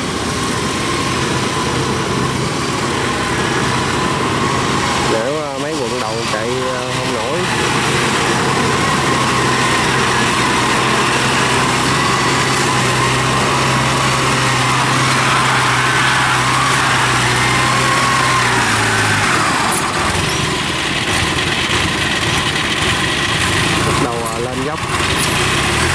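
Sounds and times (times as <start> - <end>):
wavering drive whine: 0.0 - 22.0, 23.4 - 25.9
diesel engine running under load: 0.0 - 25.9.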